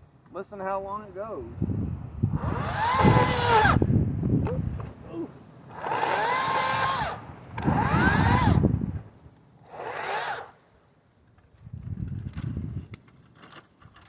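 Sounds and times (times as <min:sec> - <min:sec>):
electric chainsaw motor whine: 0:02.4 - 0:03.8, 0:05.7 - 0:08.9, 0:09.6 - 0:10.6.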